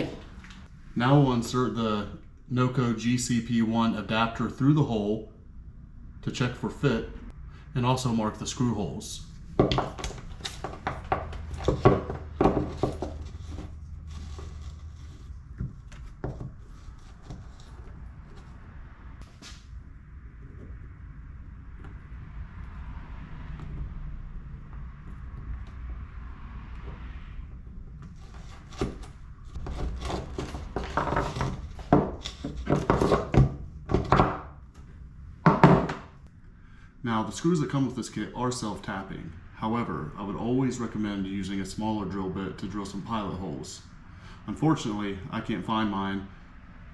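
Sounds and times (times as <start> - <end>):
plastic plug knocking and rubbing: 9.6 - 13.7, 28.3 - 34.4.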